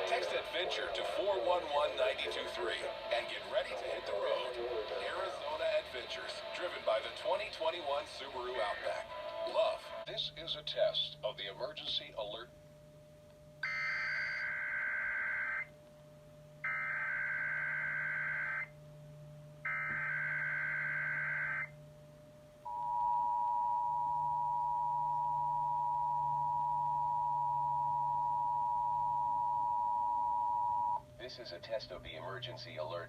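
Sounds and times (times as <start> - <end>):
harsh buzzing data bursts: 13.6 - 15.7, 16.6 - 18.7, 19.6 - 21.7
steady two-tone attention signal: 22.7 - 31.0.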